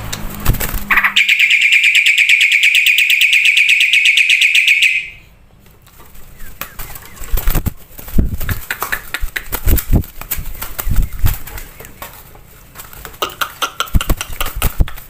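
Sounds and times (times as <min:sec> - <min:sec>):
bird high trill: 0:00.9 - 0:05.3
soft bird chips and clicks: 0:05.6 - 0:07.6, 0:08.4 - 0:15.0.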